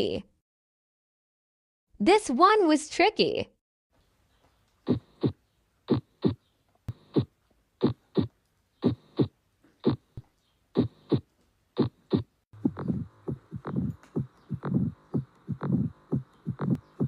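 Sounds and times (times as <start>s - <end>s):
heartbeat lub-dub thuds: 4.9s - 10.2s, 10.8s - 17.0s.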